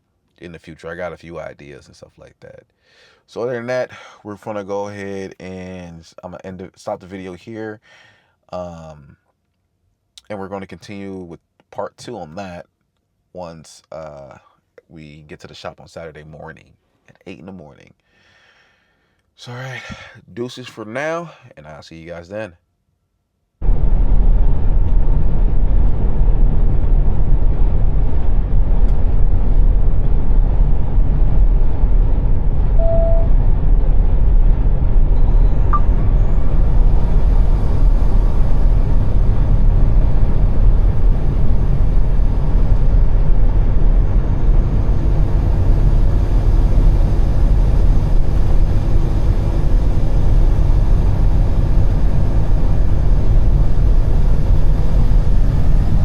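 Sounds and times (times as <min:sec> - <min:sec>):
truck engine and road rumble: 0:23.6 - 0:56.0.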